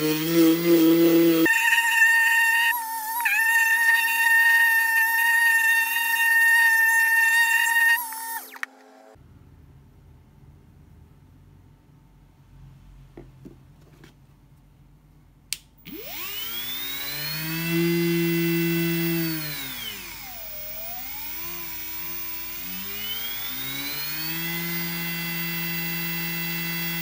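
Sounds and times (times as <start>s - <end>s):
die grinder motor whining: 0.0s - 8.7s, 15.9s - 27.0s.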